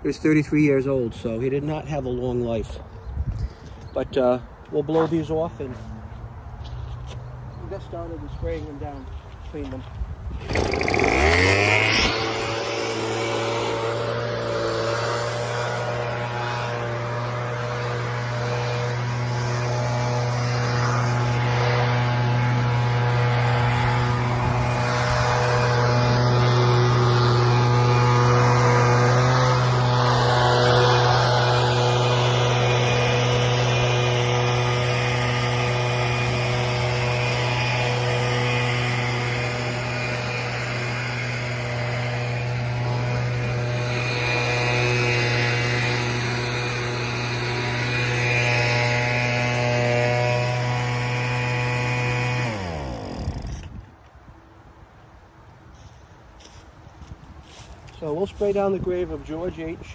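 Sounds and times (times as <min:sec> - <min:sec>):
leaf blower running: 0:09.5 - 0:53.8.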